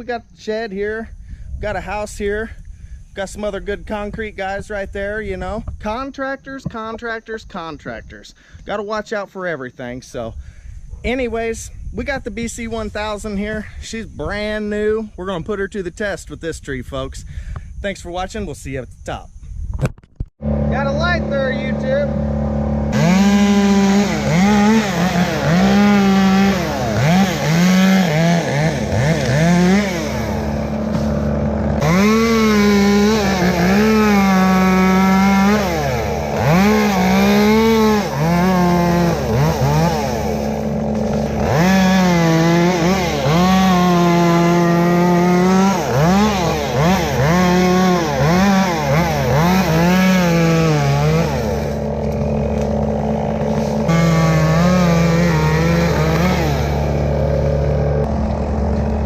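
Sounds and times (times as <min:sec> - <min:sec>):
chainsaw revving and cutting: 0:20.4 - 0:59.0
steady engine drone: 0:20.4 - 0:59.0.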